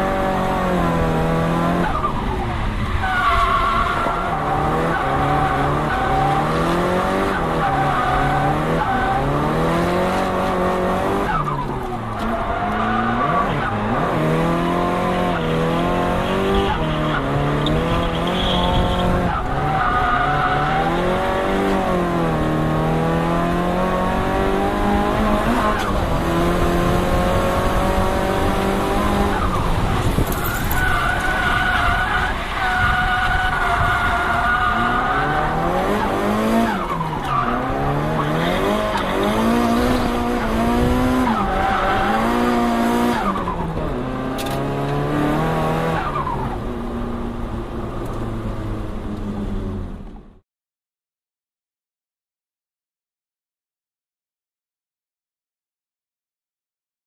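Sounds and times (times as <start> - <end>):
turbocharged car engine revving: 0.0 - 2.2, 3.6 - 32.2, 33.8 - 46.7.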